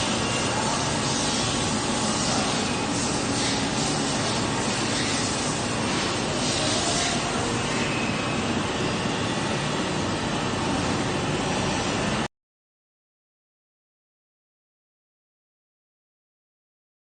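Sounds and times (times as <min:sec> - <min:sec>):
machine running with steady hiss: 0:00.0 - 0:12.3.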